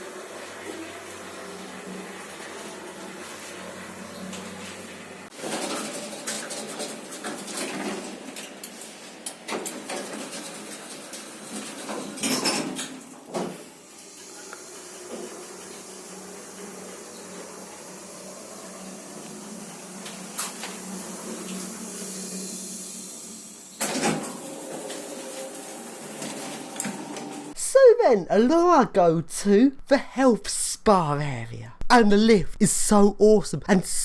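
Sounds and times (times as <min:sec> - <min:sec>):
lift car humming and hissing: 0:14.0 - 0:27.6.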